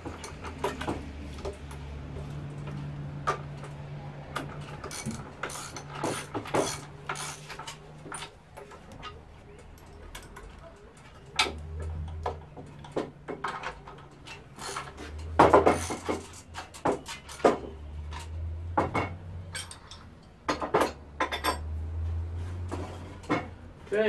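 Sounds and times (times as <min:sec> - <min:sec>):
metal tools clinking on bolts: 0:04.3 - 0:21.8.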